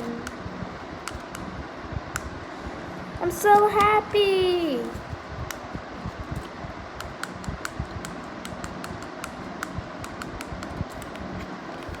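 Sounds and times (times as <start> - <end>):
sharp plastic clicks: 1.0 - 1.5, 7.0 - 12.0.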